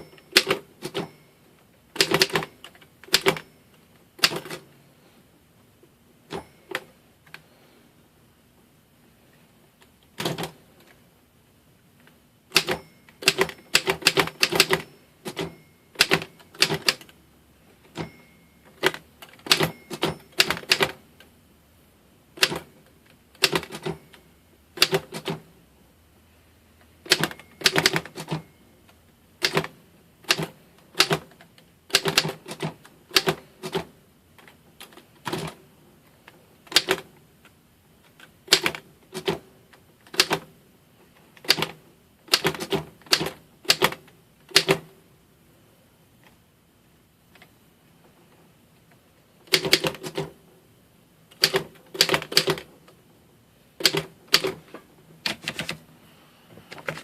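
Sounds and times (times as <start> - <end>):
manual typewriter key strikes: 0.0 - 1.2, 2.0 - 3.5, 4.2 - 4.6, 12.5 - 17.1, 17.9 - 21.0, 22.4 - 22.7, 23.4 - 24.2, 24.8 - 25.4, 27.0 - 28.5, 29.4 - 33.9, 36.7 - 37.1, 40.1 - 40.5, 41.4 - 44.9, 49.5 - 50.4, 51.3 - 52.7, 53.8 - 54.6.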